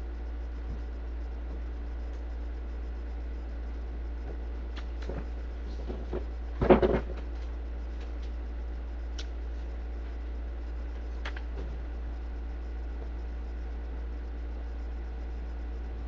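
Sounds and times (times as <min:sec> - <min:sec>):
steady low hum: 0:00.0 - 0:16.0
clatter of knocks: 0:05.0 - 0:07.3.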